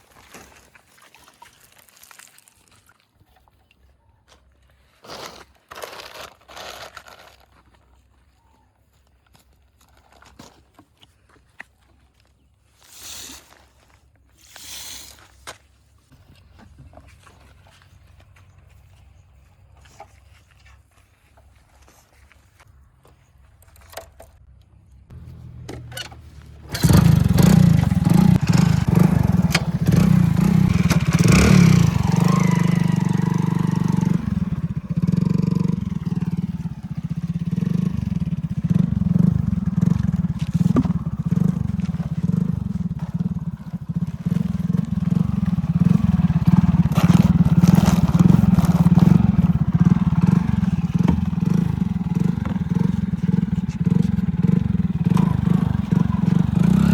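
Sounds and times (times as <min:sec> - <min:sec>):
heavy vehicle engine starting and running: 0:25.1 - 0:36.9.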